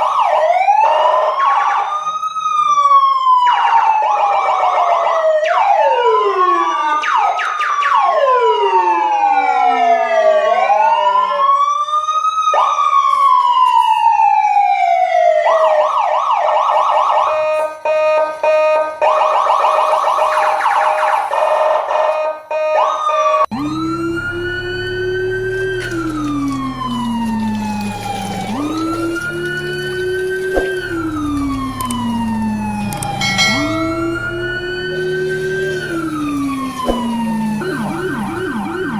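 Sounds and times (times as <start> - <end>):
emergency vehicle sirens wailing: 0.0 - 38.9
low hum: 23.5 - 38.8.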